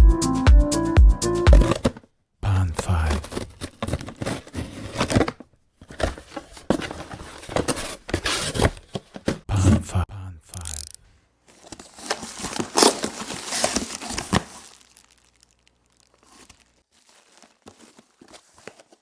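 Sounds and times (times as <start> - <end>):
packaging crinkling and tearing: 3.0 - 8.9, 11.5 - 19.0.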